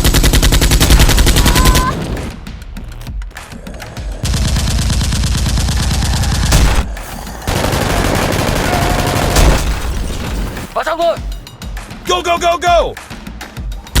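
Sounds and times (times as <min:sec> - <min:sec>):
automatic gunfire bursts: 0:00.0 - 0:02.1, 0:07.5 - 0:10.4.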